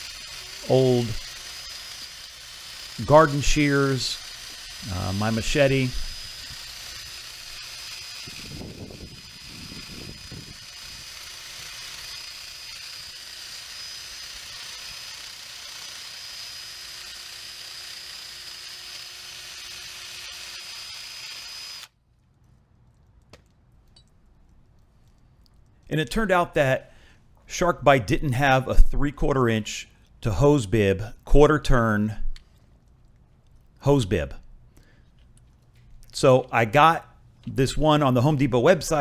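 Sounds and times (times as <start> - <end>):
wire brush drill scrubbing metal: 0.0 - 21.9.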